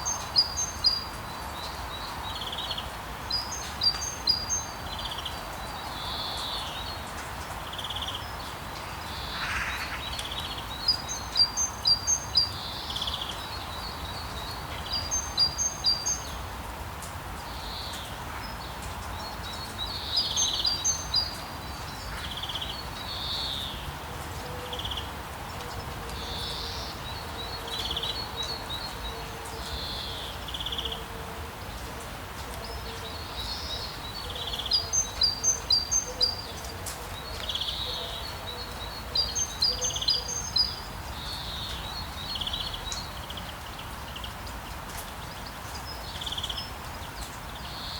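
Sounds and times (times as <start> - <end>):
birds chirping: 0.0 - 16.4, 32.4 - 47.9.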